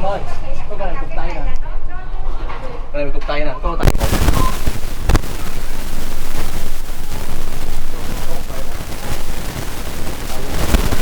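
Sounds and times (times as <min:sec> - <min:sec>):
wind buffeting microphone: 0:03.7 - 0:11.0.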